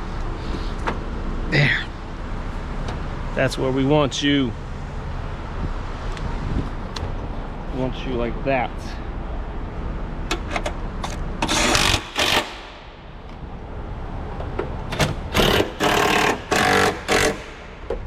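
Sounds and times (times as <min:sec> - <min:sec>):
ratchet wrench clicking: 0:11.4 - 0:12.7, 0:15.3 - 0:17.6.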